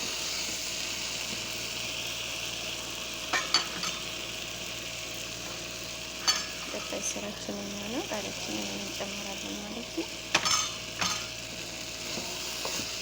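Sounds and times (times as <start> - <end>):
sauce sizzling in a pot: 0.0 - 13.0
spoon clinking against pot: 10.3 - 11.3.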